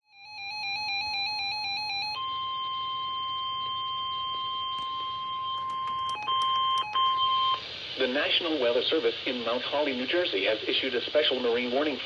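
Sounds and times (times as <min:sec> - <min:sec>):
steady piercing alarm tone: 0:00.0 - 0:07.7
faint radio hiss: 0:02.3 - 0:12.0.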